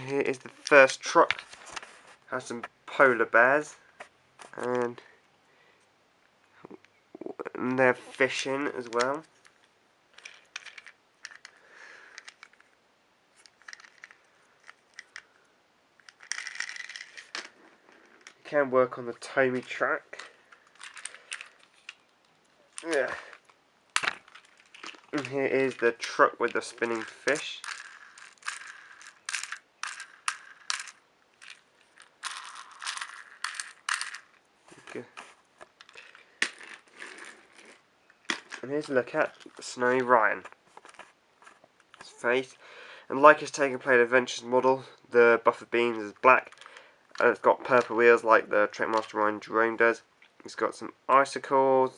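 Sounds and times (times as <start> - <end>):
plastic toy trucks clicking: 10.2 - 12.8, 13.4 - 15.3, 16.0 - 18.4, 20.2 - 22.1, 22.7 - 35.0, 35.6 - 40.1, 46.2 - 48.0, 48.8 - 49.2
packaging rustling: 20.2 - 29.2, 31.4 - 42.1
plastic packaging crackling: 20.2 - 29.3.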